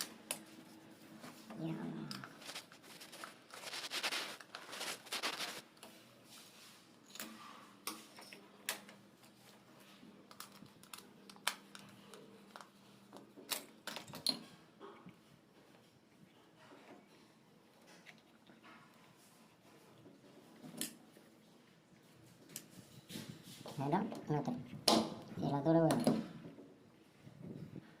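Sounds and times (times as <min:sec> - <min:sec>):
scraping: 0:01.6 - 0:05.6.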